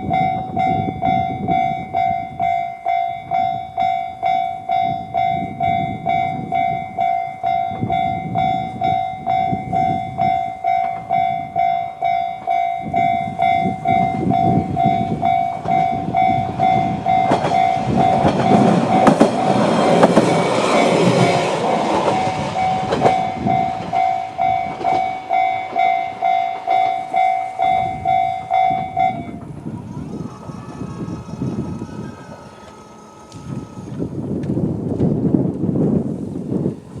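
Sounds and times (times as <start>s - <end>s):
level crossing alarm chime: 0.0s - 19.6s, 20.4s - 33.9s
train wheels clacking over rail joints: 15.3s - 27.8s.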